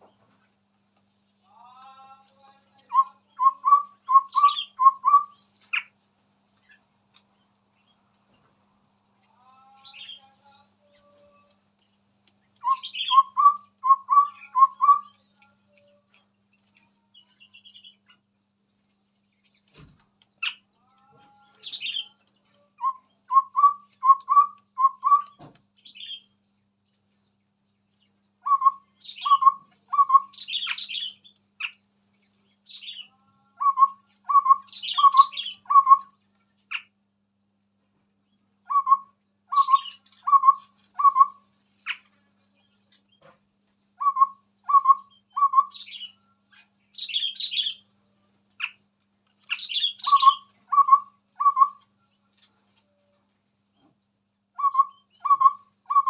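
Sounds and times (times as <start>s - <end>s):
high chattering bird calls: 0.0s - 56.0s
low whistled bird song: 2.6s - 8.2s, 9.1s - 16.8s, 21.6s - 27.3s, 28.0s - 36.9s, 38.3s - 42.8s, 43.5s - 48.8s, 49.5s - 53.9s, 54.5s - 56.0s.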